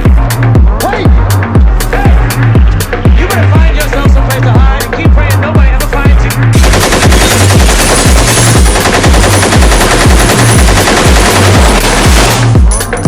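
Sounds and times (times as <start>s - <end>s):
synth track pulsing bass beat: 0.0s - 13.0s
automatic machine-gun fire: 6.6s - 12.6s.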